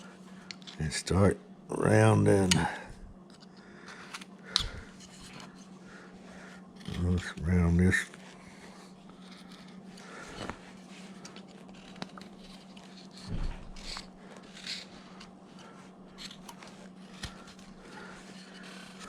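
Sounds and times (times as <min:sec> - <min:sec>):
knife carving wood: 0:06.7 - 0:19.0.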